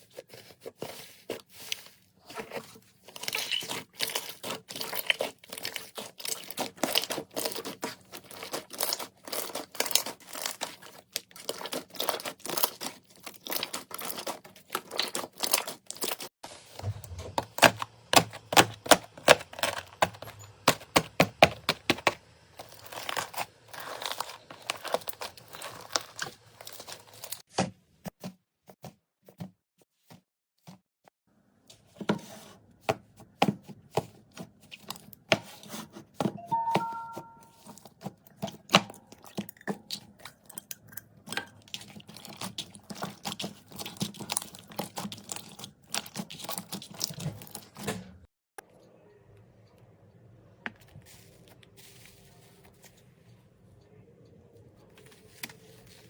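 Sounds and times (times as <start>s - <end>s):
slime crackling and popping: 3.2s - 16.3s.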